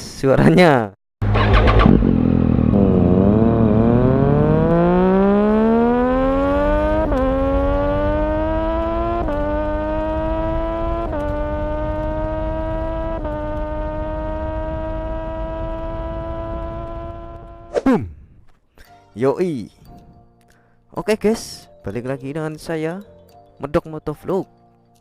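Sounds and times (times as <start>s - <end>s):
engine revving: 1.2s - 17.8s.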